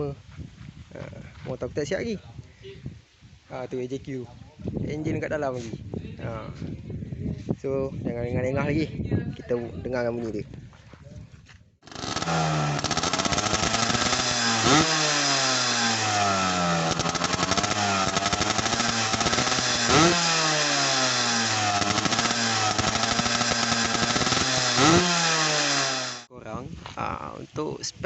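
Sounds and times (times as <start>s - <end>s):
two-stroke motorcycle engine revving: 11.8s - 26.3s.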